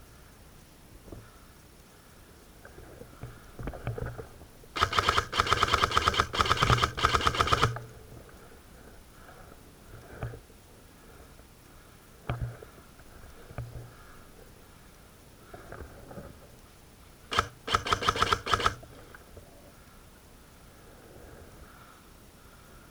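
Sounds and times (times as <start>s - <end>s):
airsoft rifle automatic bursts: 4.8s - 8.1s, 17.3s - 19.0s.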